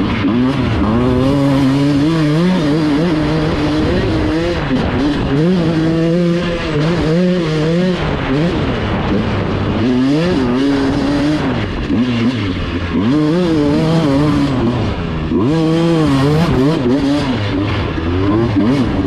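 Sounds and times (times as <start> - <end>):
dirt bike engine revving: 0.0 - 19.0.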